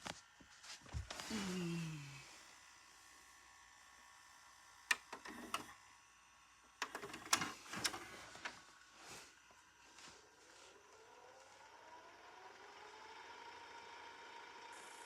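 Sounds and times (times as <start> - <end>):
mechanical clicks and clunks: 4.9 - 5.8, 6.8 - 8.6.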